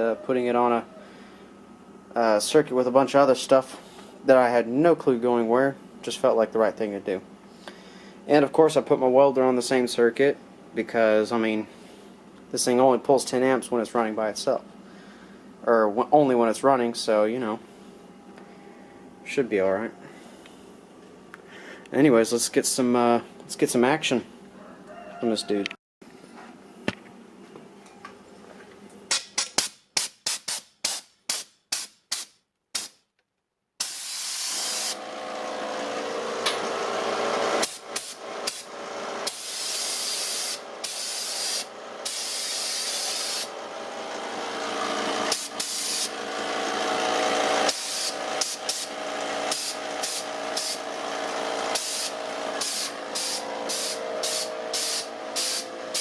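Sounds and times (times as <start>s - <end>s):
electric air compressor running: 33.8s - 56.0s.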